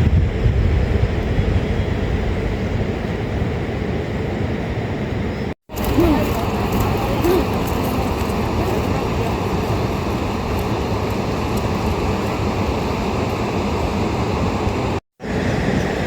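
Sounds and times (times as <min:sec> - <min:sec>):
heavy rain hiss: 0:05.7 - 0:15.5.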